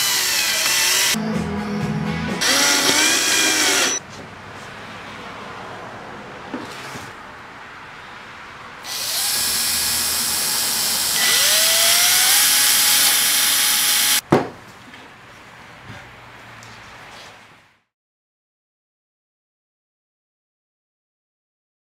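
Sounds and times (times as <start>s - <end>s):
power tool motor whine: 0.0s - 1.2s, 2.4s - 4.0s, 8.9s - 14.2s.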